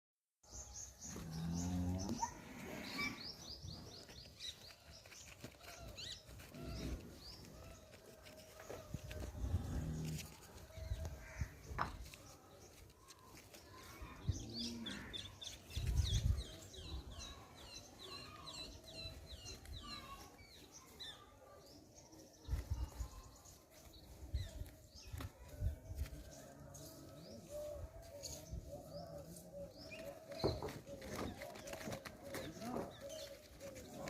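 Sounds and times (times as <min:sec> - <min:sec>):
birds chirping: 0:00.5 - 0:25.6.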